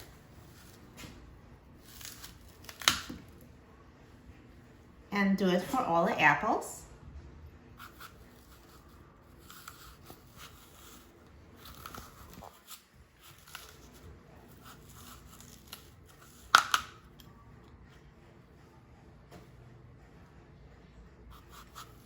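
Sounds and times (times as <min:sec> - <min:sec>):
knife cutting and scraping apples: 0:00.0 - 0:03.5, 0:05.2 - 0:06.5, 0:07.7 - 0:17.4, 0:21.2 - 0:22.0.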